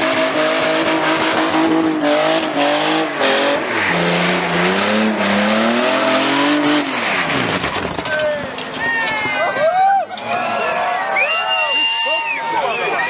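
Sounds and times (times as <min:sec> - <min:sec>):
car engine revving hard: 0:00.0 - 0:08.1
tyres squealing on pavement: 0:03.1 - 0:13.0.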